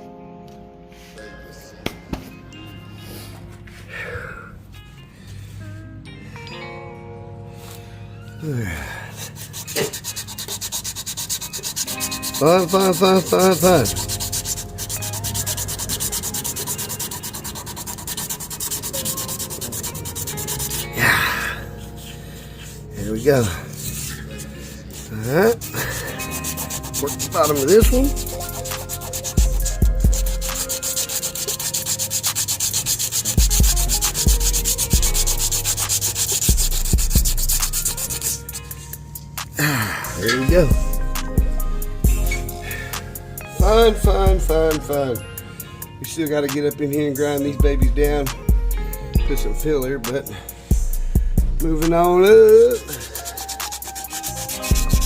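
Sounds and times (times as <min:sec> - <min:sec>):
sandpaper rubbing by hand: 0:09.2 - 0:39.0, 0:51.8 - 0:55.0
person speaking: 0:12.4 - 0:14.1, 0:22.9 - 0:23.8, 0:25.0 - 0:28.6
dull low thumps: 0:50.8 - 0:51.8.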